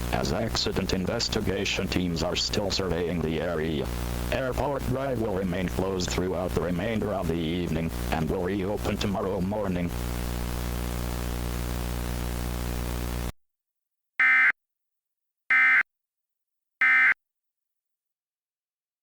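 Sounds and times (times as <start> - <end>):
radio hiss: 0.0 - 13.3.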